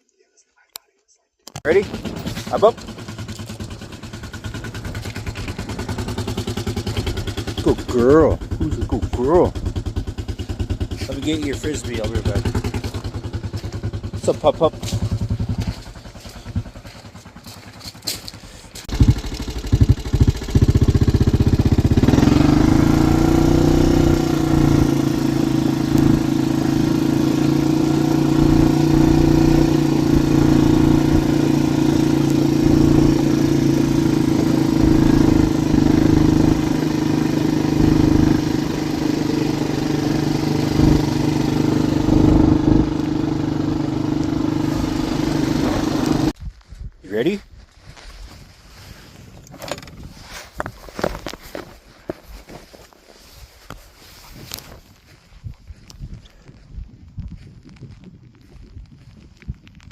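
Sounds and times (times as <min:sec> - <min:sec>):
atv engine revving: 0:01.7 - 0:46.4.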